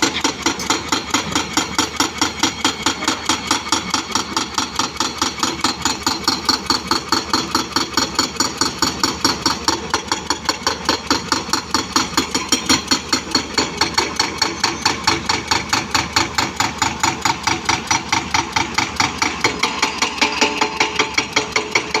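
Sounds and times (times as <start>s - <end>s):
hydraulic breaker hammering: 0.0s - 22.0s.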